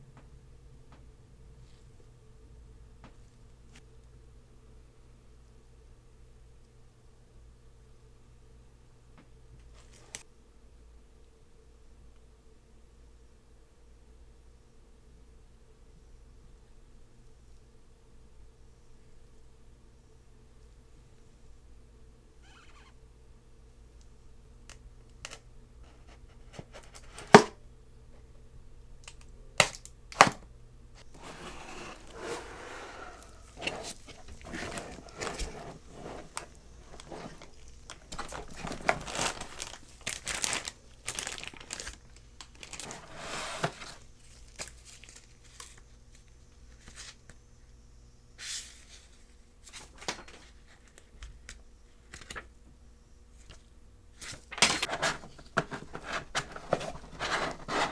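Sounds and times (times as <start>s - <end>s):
packaging rustling and tearing: 31.0s - 45.9s, 54.2s - 57.9s.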